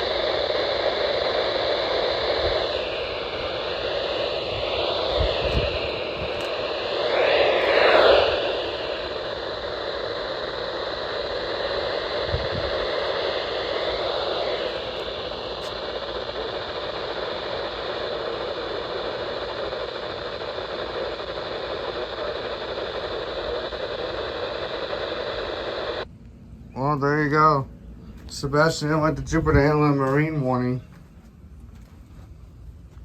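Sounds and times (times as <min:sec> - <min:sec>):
radio static hiss: 0:00.0 - 0:26.1.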